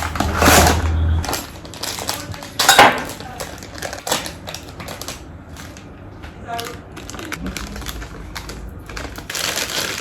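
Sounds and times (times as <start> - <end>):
kitchen utensils and bowls clinking: 0.0 - 5.2.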